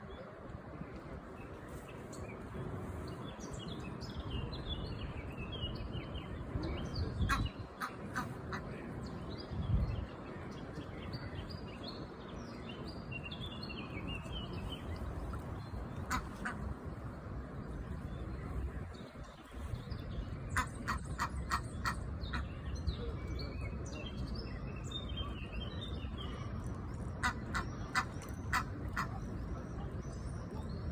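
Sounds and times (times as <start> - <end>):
ducks quacking: 7.2 - 8.7, 16.0 - 16.7, 20.5 - 22.5, 27.2 - 29.2.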